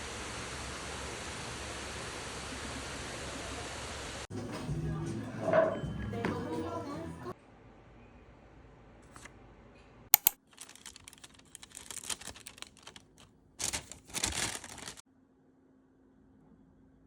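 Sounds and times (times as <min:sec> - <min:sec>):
sharp clicks: 0:10.2 - 0:13.0
crinkling and clattering: 0:10.2 - 0:15.0.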